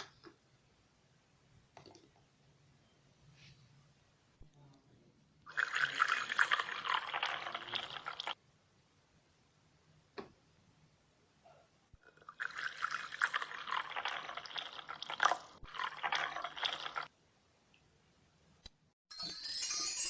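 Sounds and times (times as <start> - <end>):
water running into sink: 5.5 - 8.4, 12.4 - 17.1.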